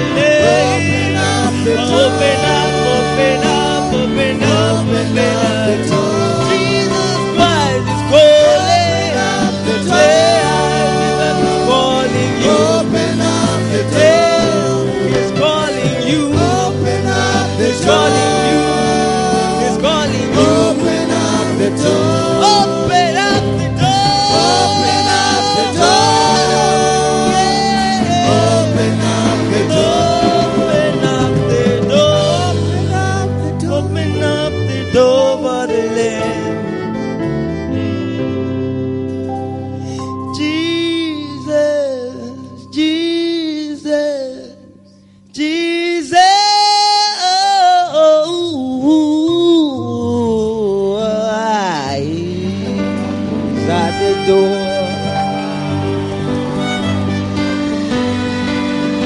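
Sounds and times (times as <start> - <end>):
person singing gospel: 0.0 - 38.3, 39.6 - 59.0
instrumental backing: 0.0 - 59.0
keyboard and bass accompaniment: 0.0 - 59.0.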